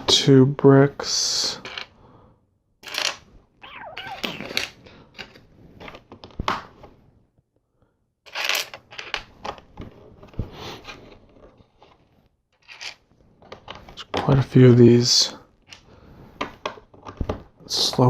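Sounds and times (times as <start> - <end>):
plastic bricks clicking and clattering: 8.3 - 9.7.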